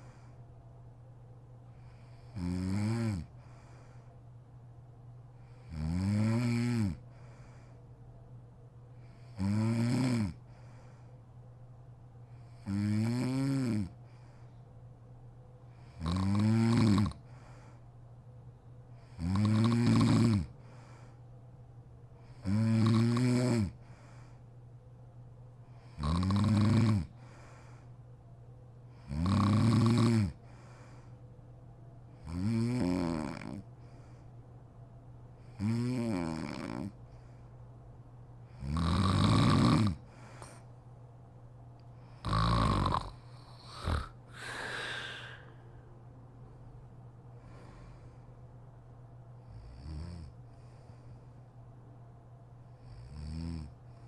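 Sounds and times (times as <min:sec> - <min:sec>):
woman snoring: 0:02.3 - 0:03.3, 0:05.7 - 0:07.0, 0:09.3 - 0:10.4, 0:12.6 - 0:13.9, 0:15.9 - 0:17.2, 0:19.2 - 0:20.5, 0:22.4 - 0:23.8, 0:26.0 - 0:27.1, 0:29.1 - 0:30.4, 0:32.3 - 0:33.6, 0:35.6 - 0:37.0, 0:38.6 - 0:40.0, 0:42.2 - 0:45.8.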